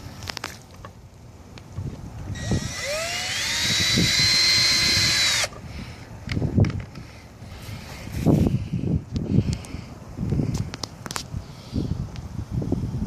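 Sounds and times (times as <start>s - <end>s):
electric drill whining: 2.3s - 5.6s.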